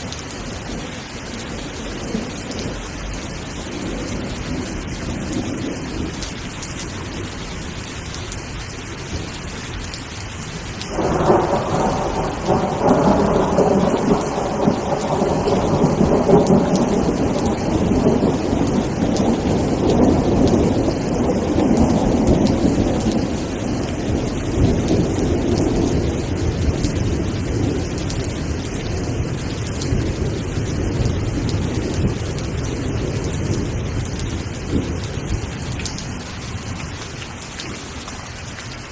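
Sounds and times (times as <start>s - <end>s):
steady rainfall: 0.0s - 38.9s
rolling thunder: 10.9s - 36.9s.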